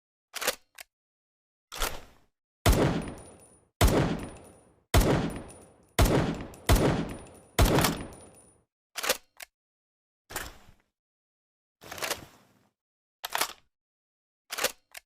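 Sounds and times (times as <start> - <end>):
gunshots with echo: 2.7 - 8.4.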